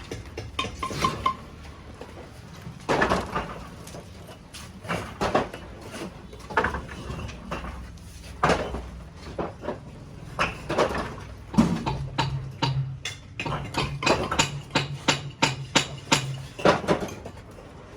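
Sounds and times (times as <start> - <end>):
knocks and clattering with ringing: 0.0 - 1.7, 8.4 - 17.5.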